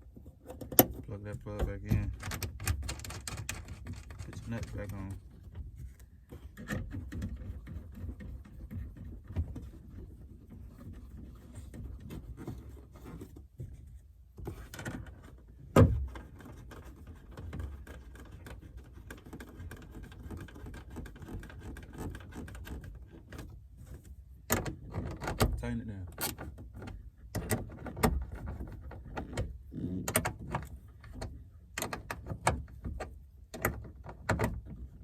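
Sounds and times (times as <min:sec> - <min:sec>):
small clicks and handling knocks: 0:00.0 - 0:35.0.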